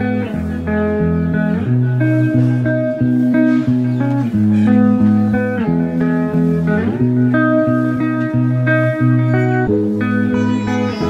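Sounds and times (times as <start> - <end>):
instrumental guitar music: 0.0 - 11.0.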